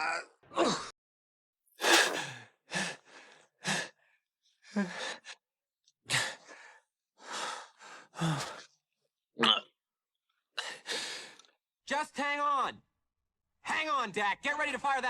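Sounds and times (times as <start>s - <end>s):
man gasping and grunting: 1.8s - 2.3s.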